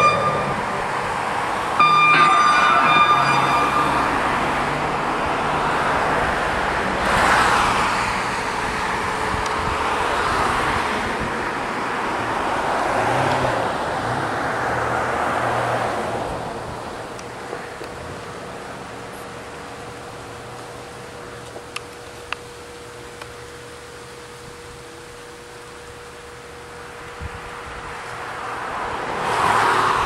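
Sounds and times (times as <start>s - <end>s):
electronic tone: 0.0s - 5.7s
vehicles passing: 0.0s - 30.0s.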